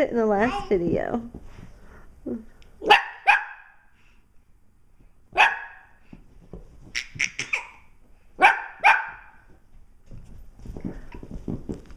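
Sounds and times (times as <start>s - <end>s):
dogs barking: 2.9s - 3.8s, 5.4s - 5.9s, 8.4s - 9.4s.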